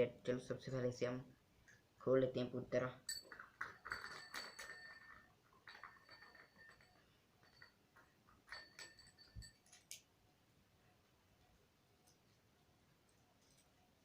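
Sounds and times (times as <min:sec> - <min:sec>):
bicycle bell ringing: 0:03.0 - 0:07.8, 0:08.4 - 0:10.0.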